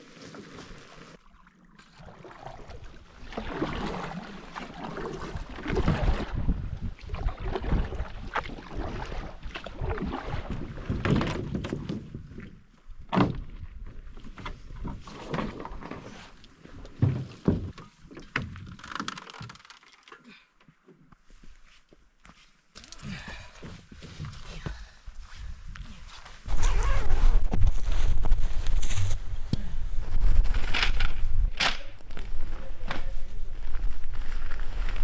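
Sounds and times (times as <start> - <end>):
paddle strokes splashing: 1.9 - 6.2, 26.5 - 35.0
paddles knocking against hull: 26.5 - 35.0.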